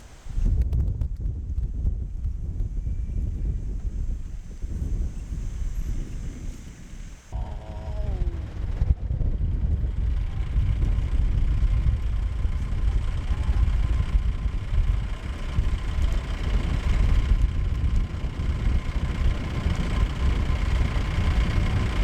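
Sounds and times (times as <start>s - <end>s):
wind buffeting microphone: 0.0s - 22.0s
jeep engine running: 8.1s - 22.0s.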